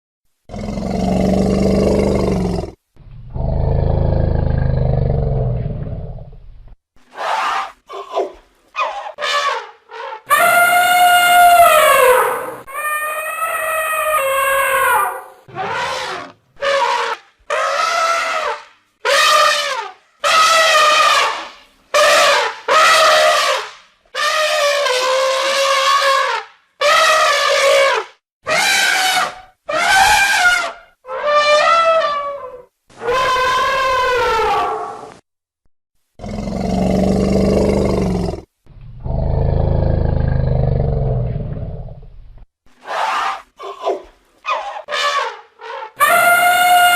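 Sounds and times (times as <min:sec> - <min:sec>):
elephant roaring: 0:00.5 - 0:06.2, 0:36.2 - 0:41.9
elephant trumpeting: 0:08.8 - 0:35.0, 0:42.9 - 0:46.9.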